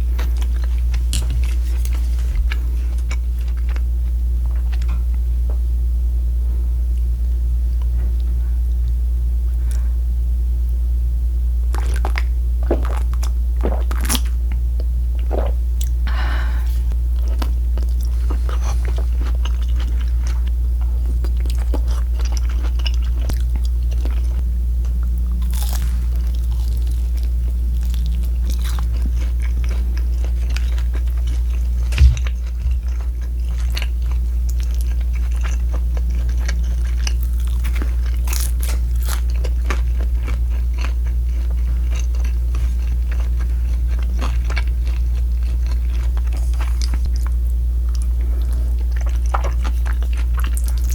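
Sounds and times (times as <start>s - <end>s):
crunchy chewing: 0.0s - 5.2s, 11.7s - 16.0s, 16.9s - 50.9s
steady low hum: 0.0s - 50.9s
sharp low thump: 31.9s - 32.9s.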